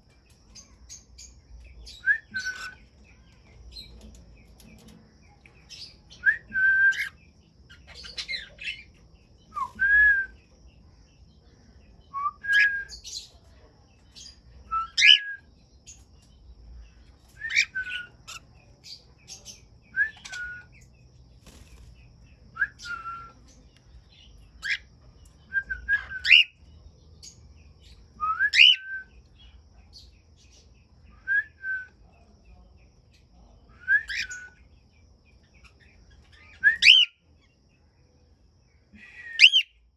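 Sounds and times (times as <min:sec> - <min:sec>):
cockatiels whistling calls: 0:01.9 - 0:02.8, 0:06.3 - 0:07.2, 0:14.8 - 0:15.4, 0:17.4 - 0:18.4, 0:20.0 - 0:20.7, 0:25.7 - 0:26.5, 0:28.3 - 0:29.0, 0:34.0 - 0:34.6, 0:36.6 - 0:37.1, 0:39.4 - 0:39.7.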